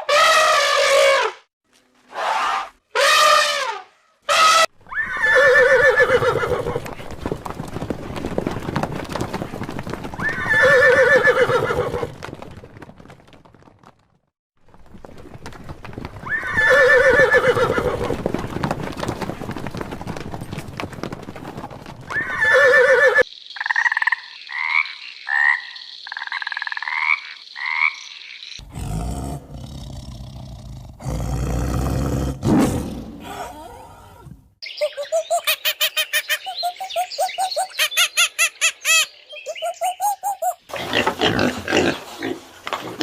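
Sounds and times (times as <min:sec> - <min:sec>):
horse whinnying: 0:04.4 - 0:06.9, 0:10.2 - 0:12.2, 0:16.2 - 0:18.1, 0:22.1 - 0:23.2.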